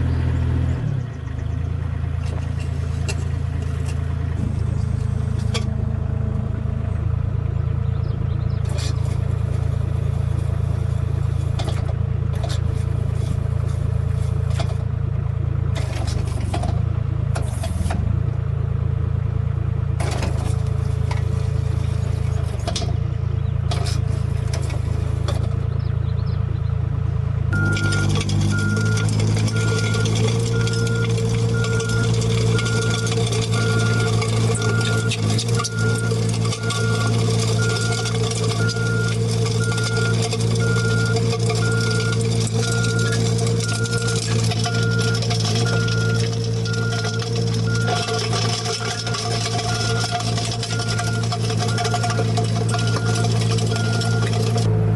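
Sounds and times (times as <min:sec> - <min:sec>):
construction machine engine running: 0:00.0 - 0:54.9
reversing alarm beeping: 0:27.5 - 0:54.6.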